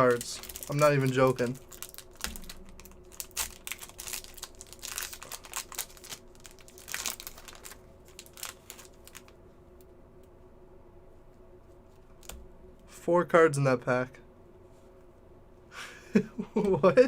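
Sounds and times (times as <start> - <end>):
plastic wrapper crinkling: 0.0 - 9.4.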